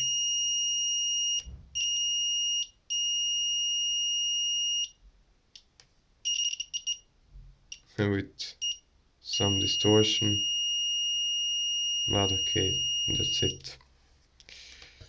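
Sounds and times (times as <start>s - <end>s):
multimeter continuity beep: 0.0s - 5.0s, 6.3s - 7.1s, 8.6s - 13.7s.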